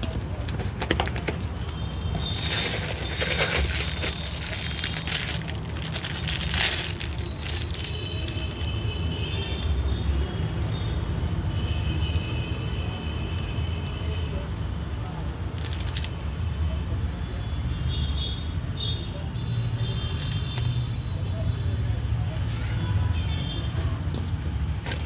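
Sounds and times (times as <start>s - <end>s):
packaging crinkling: 0.0s - 9.1s, 15.6s - 16.2s.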